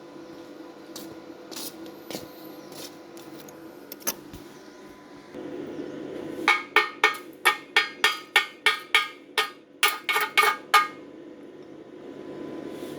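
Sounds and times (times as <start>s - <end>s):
hammer tapping on metal: 6.5s - 11.0s.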